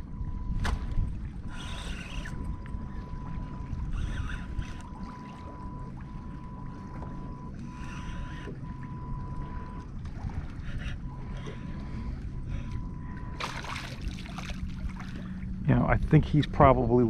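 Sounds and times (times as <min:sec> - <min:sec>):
water around a kayak: 0:00.0 - 0:17.0
faint steady high tone: 0:01.4 - 0:13.9.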